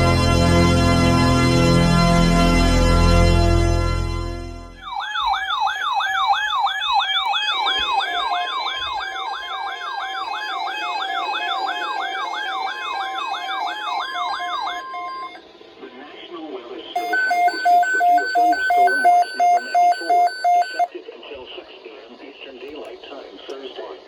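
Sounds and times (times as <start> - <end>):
organ music: 0.0 - 15.4, 17.0 - 20.9
electronic siren yelping: 4.8 - 15.4, 17.0 - 20.9
steady beep tone: 7.2 - 15.4, 17.0 - 20.9.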